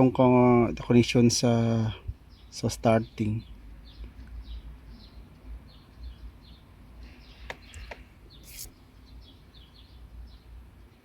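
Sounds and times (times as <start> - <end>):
small birds chirping: 0.0 - 11.0
sharp clicks: 7.4 - 8.1
brief hiss: 8.4 - 8.8.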